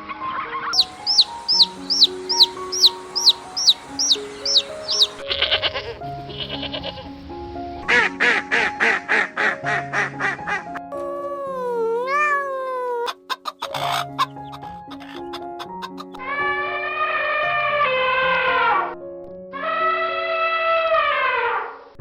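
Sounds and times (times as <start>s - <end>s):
background music: 0.0s - 22.0s
ducks quacking: 0.8s - 7.0s, 13.1s - 16.2s.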